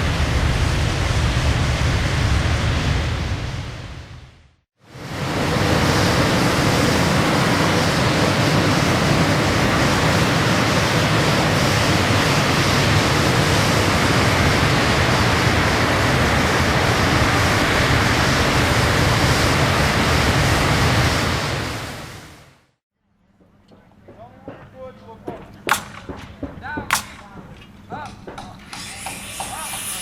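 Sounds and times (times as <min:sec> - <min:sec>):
rushing wind: 0:00.0 - 0:22.6.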